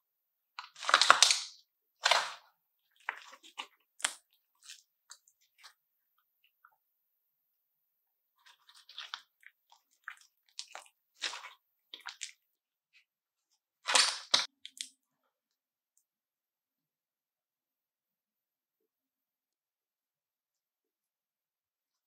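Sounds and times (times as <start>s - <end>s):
slime crunching and squishing: 0.6s - 5.7s, 8.4s - 12.4s, 13.8s - 14.9s.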